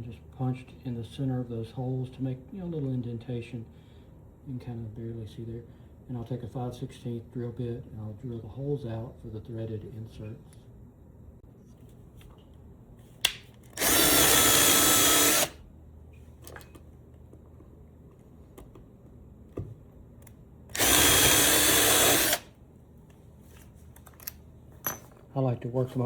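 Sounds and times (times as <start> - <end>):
power drill whining: 13.8 - 15.6, 20.7 - 22.5.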